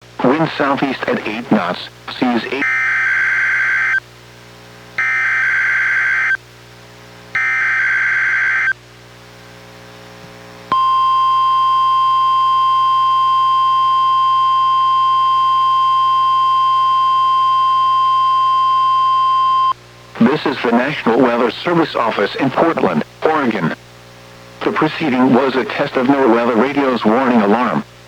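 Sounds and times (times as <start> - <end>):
steady warning alarm tone: 5.0 - 6.4, 7.4 - 8.7, 10.7 - 19.8.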